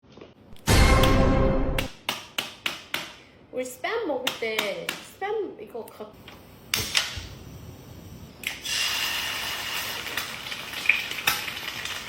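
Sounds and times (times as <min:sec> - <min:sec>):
meat sizzling in a hot pan: 0:08.6 - 0:12.0.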